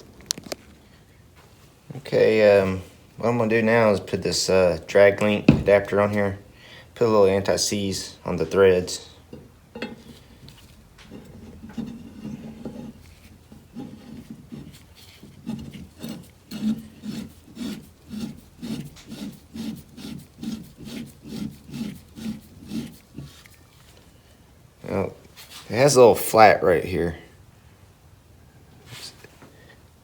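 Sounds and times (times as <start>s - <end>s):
rasping rubs on metal threads: 9.9s - 23.6s.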